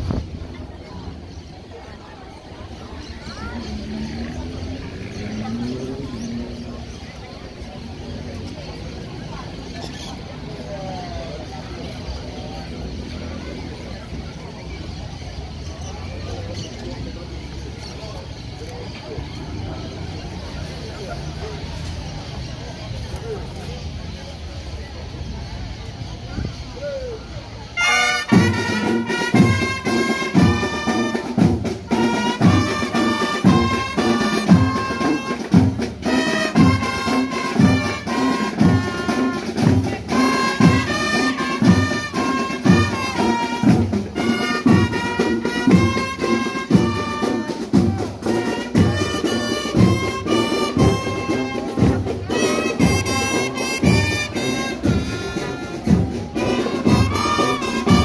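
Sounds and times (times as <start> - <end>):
brass melody: 27.7 - 58.0.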